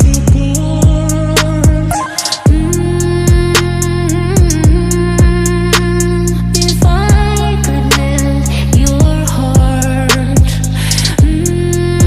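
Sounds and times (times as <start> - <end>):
sliding bass notes: 0.0 - 12.0
crisp hi-hat ticks: 3.0 - 11.6.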